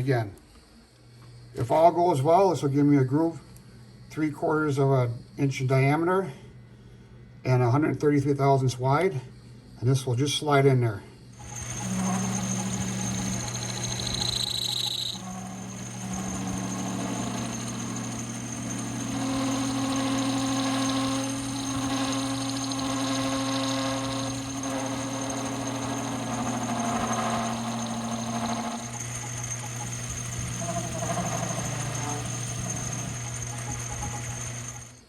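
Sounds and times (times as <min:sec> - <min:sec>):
lathe tool cutting metal: 0:11.4 - 0:35.0
metal lathe motor hum: 0:11.4 - 0:35.0.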